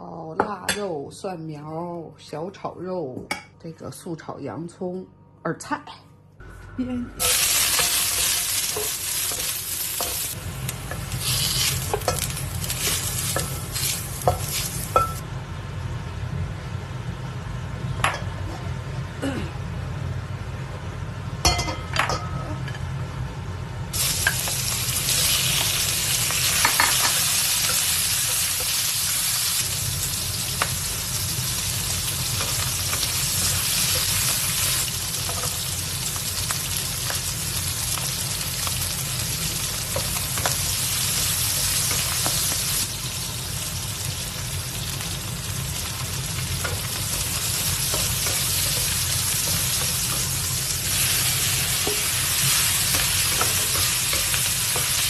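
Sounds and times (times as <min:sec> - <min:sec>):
food sizzling in a pan: 0:07.2 - 0:15.2, 0:23.9 - 0:55.0.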